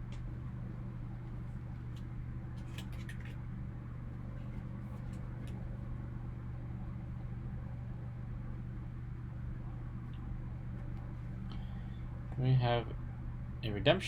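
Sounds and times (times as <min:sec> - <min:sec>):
steady low hum: 0:00.0 - 0:14.0
trading cards being handled: 0:01.7 - 0:03.4.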